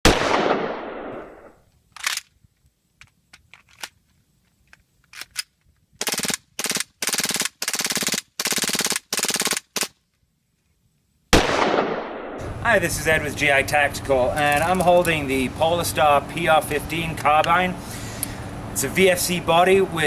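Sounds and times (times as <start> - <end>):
airsoft gun single shots: 0.0 - 1.5, 11.4 - 12.4
airsoft gun full-auto bursts: 6.0 - 10.0.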